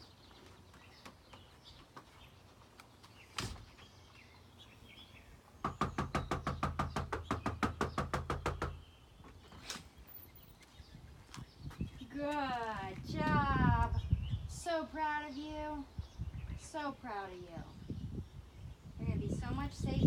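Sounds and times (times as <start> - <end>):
knuckles knocking on a door: 5.6 - 8.8.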